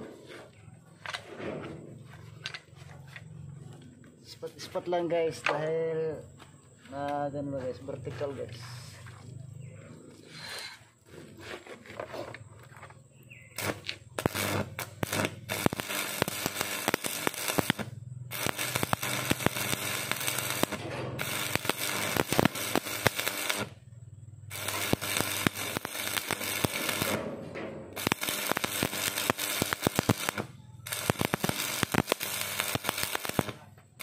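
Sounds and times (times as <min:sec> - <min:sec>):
welding arc crackling: 0:13.5 - 0:34.0.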